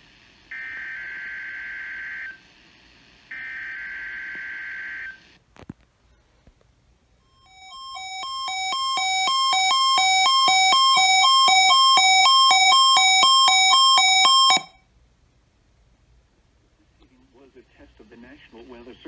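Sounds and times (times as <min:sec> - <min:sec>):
high-low alarm tones: 0:07.4 - 0:14.8.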